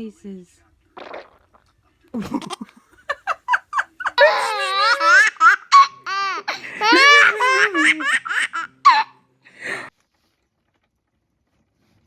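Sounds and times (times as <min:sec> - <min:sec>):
baby laughing: 0:02.2 - 0:09.9.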